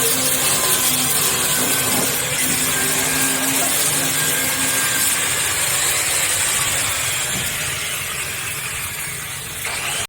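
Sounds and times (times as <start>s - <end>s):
woodworking machinery hissing: 0.0s - 10.0s.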